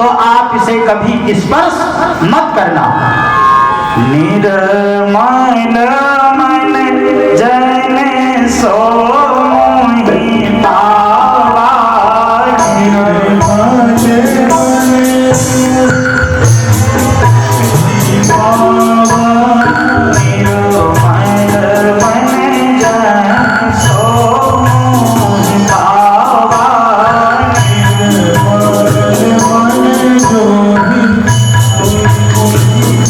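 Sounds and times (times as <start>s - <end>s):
ornamented melody: 2.9s - 33.0s
percussion striking: 10.2s - 33.0s.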